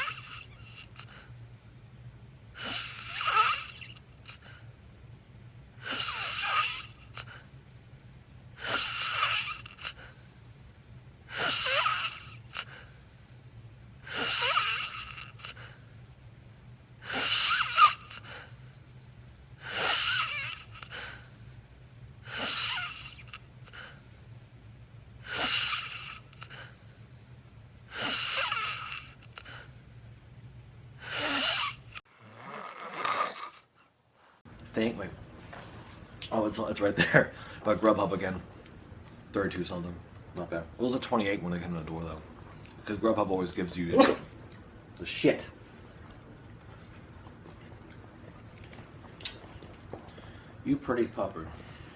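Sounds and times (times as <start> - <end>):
heavy hissing breaths: 0.0 - 10.6, 11.2 - 16.3, 17.0 - 19.0, 19.6 - 30.2, 31.0 - 34.4
steady low hum: 0.0 - 51.9.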